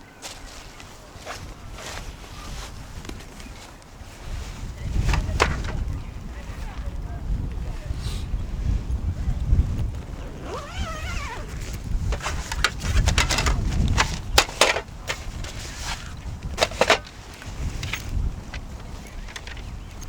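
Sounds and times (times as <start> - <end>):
wind rumbling on microphone: 0.4 - 20.0
sharp knocks and clatters: 5.1 - 5.8, 12.1 - 16.0, 16.6 - 17.2.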